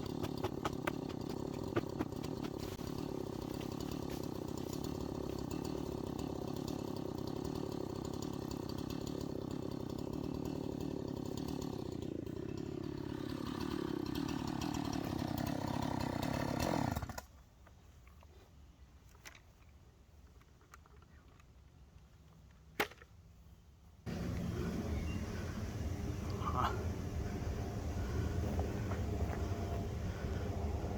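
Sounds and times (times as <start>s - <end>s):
chainsaw cutting: 0.0s - 17.3s, 24.1s - 30.9s.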